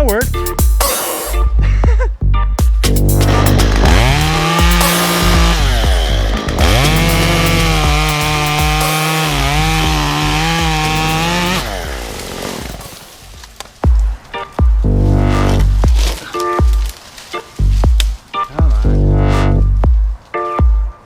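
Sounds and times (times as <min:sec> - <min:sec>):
chainsaw cutting wood: 0:03.1 - 0:13.7.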